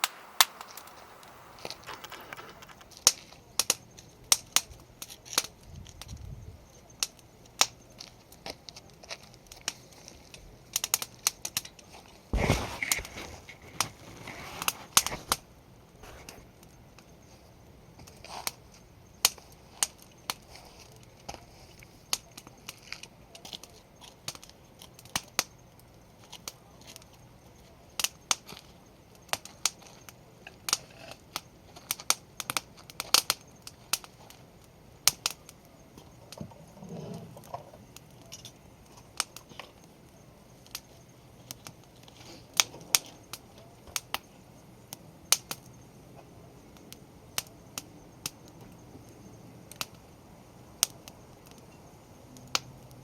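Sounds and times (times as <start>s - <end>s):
campfire crackling and popping: 0.0s - 53.0s.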